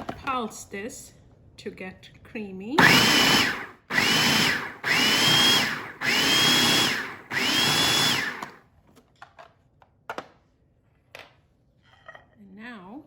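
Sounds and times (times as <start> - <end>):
food processor motor pulsing: 2.8 - 8.6.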